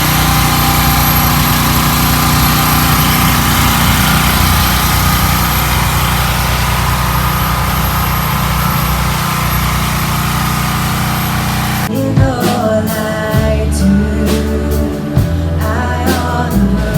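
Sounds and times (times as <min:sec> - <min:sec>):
generator engine running: 0:00.0 - 0:16.9
music: 0:11.9 - 0:16.9.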